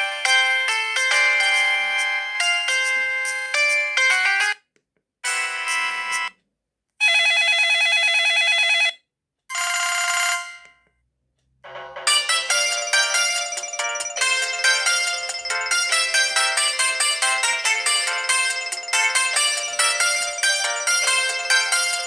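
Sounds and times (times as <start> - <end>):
phone ringtone melody: 11.7 - 22.0.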